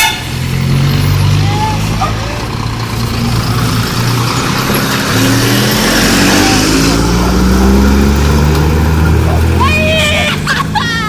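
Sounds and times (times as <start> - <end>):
truck engine accelerating: 0.0 - 11.0.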